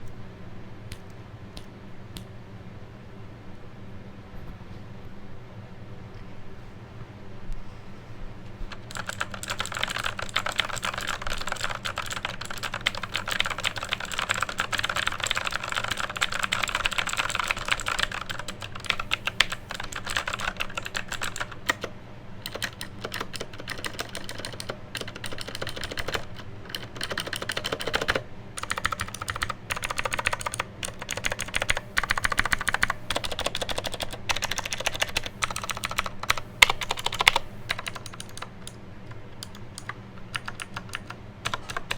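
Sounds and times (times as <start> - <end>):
electric fan humming: 7.7 - 41.9
clicky mechanical keyboard typing: 8.7 - 41.9.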